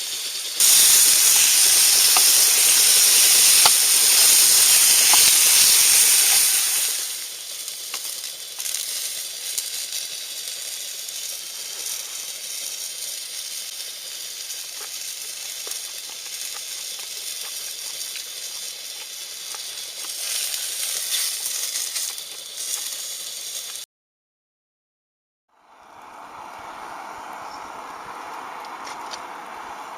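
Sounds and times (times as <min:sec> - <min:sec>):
steady sizzling hiss with crackles: 0:00.0 - 0:23.8.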